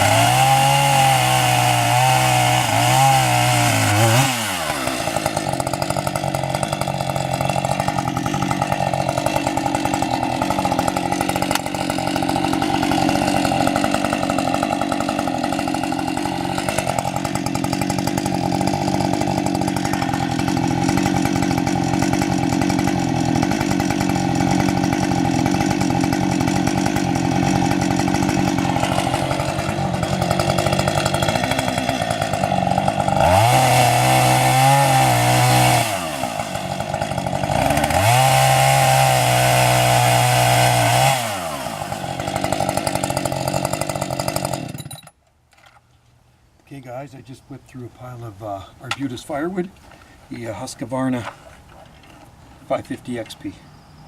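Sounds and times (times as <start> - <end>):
chainsaw cutting firewood: 0.0 - 45.8.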